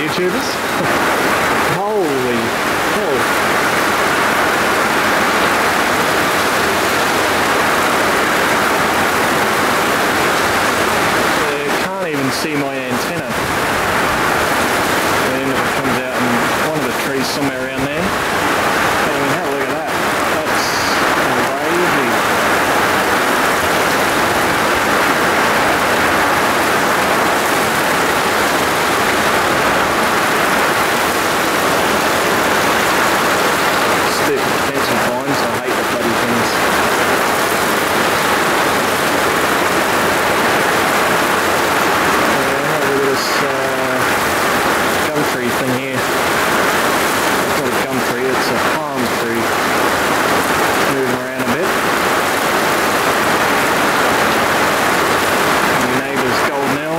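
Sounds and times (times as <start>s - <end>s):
heavy rain pouring: 0.0s - 56.9s.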